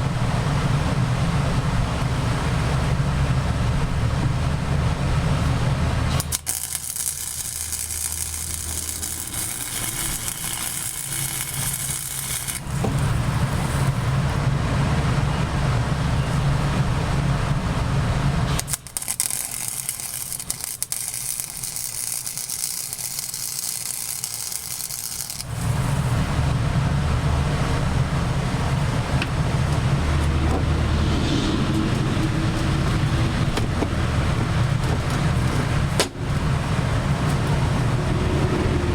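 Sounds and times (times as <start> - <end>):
low steady hum: 0.0 - 38.9
welding arc hissing and crackling: 6.1 - 14.3, 18.5 - 26.3.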